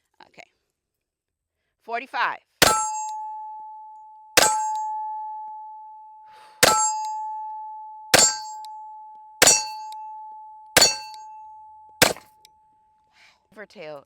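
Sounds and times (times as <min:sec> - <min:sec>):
steel target ringing: 0:02.6 - 0:12.4.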